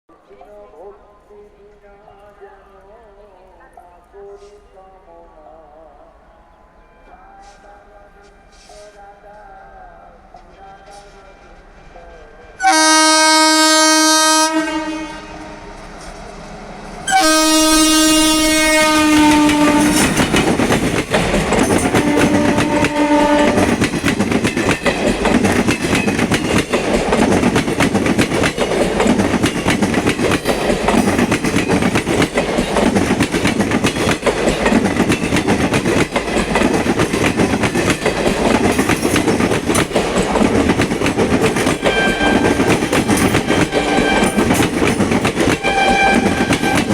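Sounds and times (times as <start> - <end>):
locomotive twin-tone horn: 10.9 - 15.8, 17.1 - 20.3, 21.9 - 23.9, 41.8 - 44.7, 45.5 - 46.9
train wheels clattering on rails: 16.0 - 46.9.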